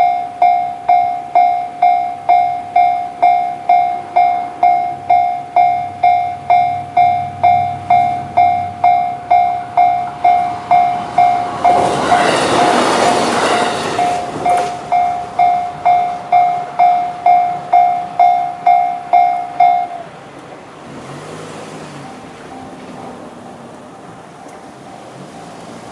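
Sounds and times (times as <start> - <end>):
level crossing bell dinging: 0.0 - 20.1
electric train rushing past: 0.0 - 25.9.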